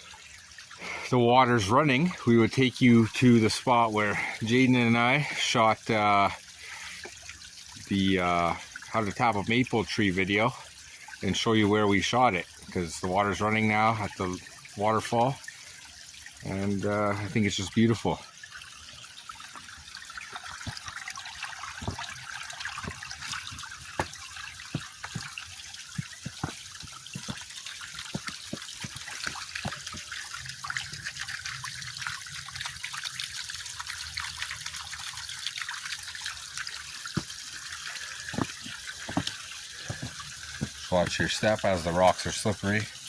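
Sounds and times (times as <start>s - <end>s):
small waterfall running: 0.0s - 43.0s
sharp water splashes: 19.5s - 31.8s.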